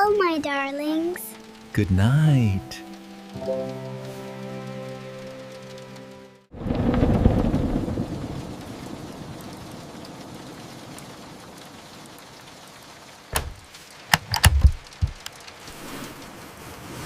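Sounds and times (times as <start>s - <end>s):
steady rain: 0.0s - 17.0s
thunder rumble: 6.5s - 11.6s
sharp thunder cracks: 6.6s - 9.4s.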